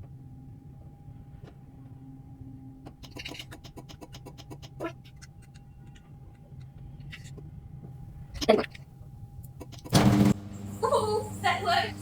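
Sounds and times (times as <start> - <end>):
garage door opener hum: 9.9 - 12.0.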